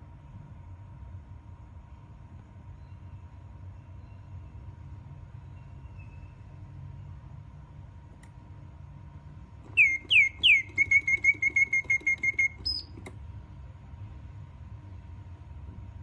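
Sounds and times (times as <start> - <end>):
mechanical bird whistling: 9.7 - 13.0.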